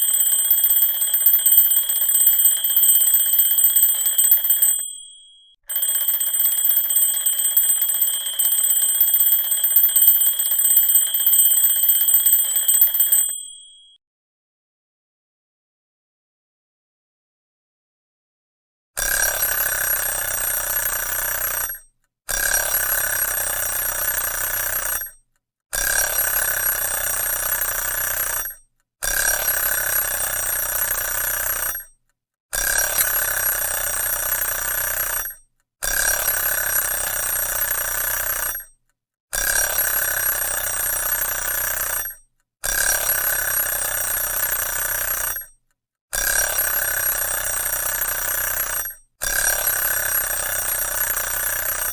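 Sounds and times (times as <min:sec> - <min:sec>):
alarm clock bell ringing: 0:00.0 - 0:14.0, 0:50.3 - 0:51.9.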